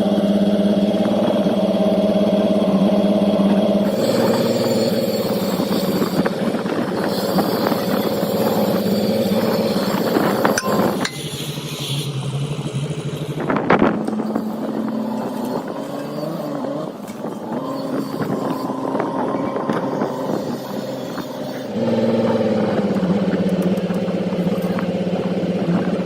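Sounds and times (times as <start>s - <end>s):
engine running steadily: 0.0s - 26.0s
sharp metallic clanks: 4.0s - 11.8s.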